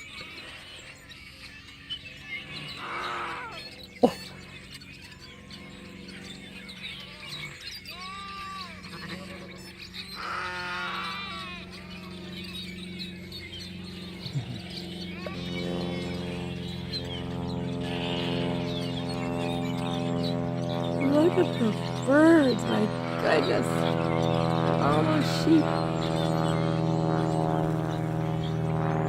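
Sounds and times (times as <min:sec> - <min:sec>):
sheep bleating: 0:02.8 - 0:04.2, 0:07.2 - 0:09.6, 0:10.2 - 0:11.9.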